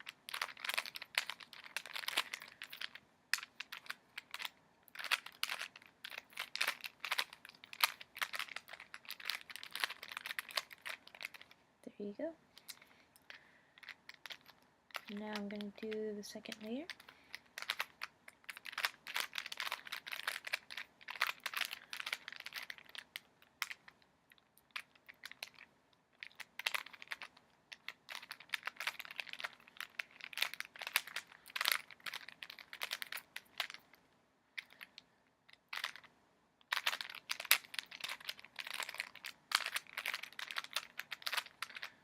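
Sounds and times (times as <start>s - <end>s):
puzzle cube clicking: 0.0s - 11.6s, 12.6s - 34.0s, 34.6s - 36.1s, 36.7s - 42.0s.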